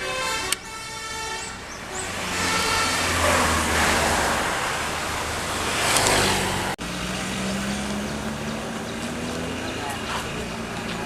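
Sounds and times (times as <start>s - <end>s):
musical horn note: 0.0s - 3.6s
bus diesel engine passing: 0.0s - 11.0s
road noise: 0.0s - 11.0s.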